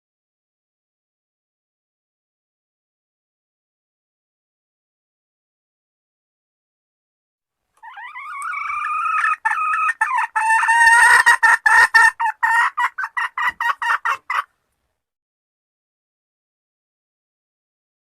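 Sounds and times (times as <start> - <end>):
hen calling: 7.8 - 14.5
hen clucking: 7.8 - 14.5.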